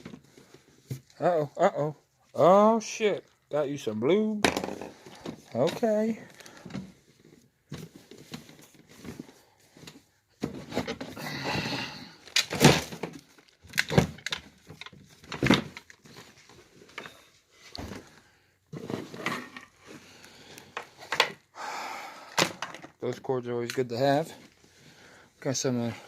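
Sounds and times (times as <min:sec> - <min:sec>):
objects knocking and clattering: 0:04.4 - 0:06.0, 0:07.7 - 0:19.9, 0:20.7 - 0:21.4, 0:22.4 - 0:23.1
rustling of bags: 0:04.8 - 0:21.4.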